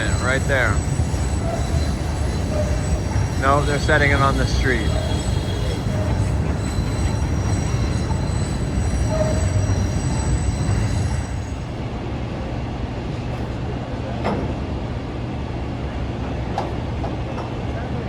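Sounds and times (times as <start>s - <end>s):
train wheels squealing: 0.0s - 12.0s
low train rumble: 0.0s - 18.0s.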